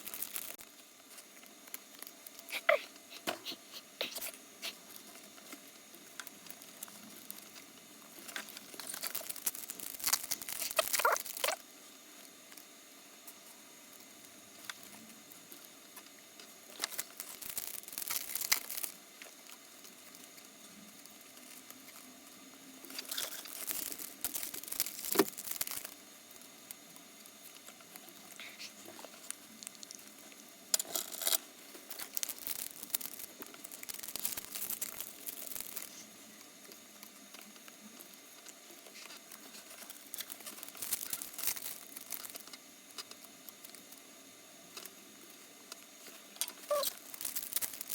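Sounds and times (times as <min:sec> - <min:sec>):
card wrappers crinkling and tearing: 0:00.0 - 0:11.6, 0:16.7 - 0:19.0, 0:22.8 - 0:26.0, 0:30.9 - 0:36.0, 0:38.9 - 0:43.1, 0:46.5 - 0:47.9.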